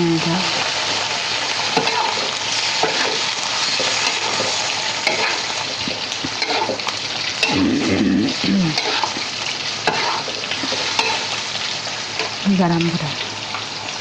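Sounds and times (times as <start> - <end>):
vegetables sizzling in oil: 0.0 - 14.0
spatula scraping a pan: 1.8 - 7.6, 8.7 - 11.4.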